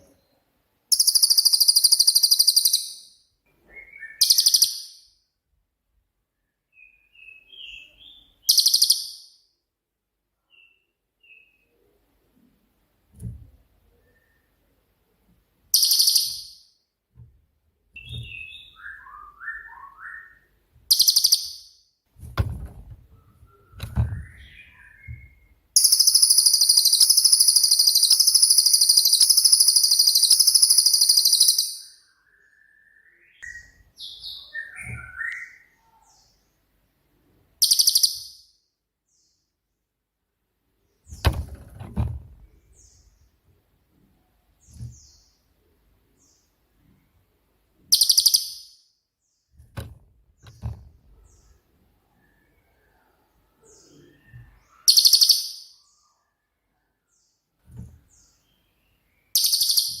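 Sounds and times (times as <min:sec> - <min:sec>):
songbird shrill trills: 0:15.8 - 0:16.6, 0:18.0 - 0:21.6, 0:23.8 - 0:35.7, 0:37.6 - 0:38.3.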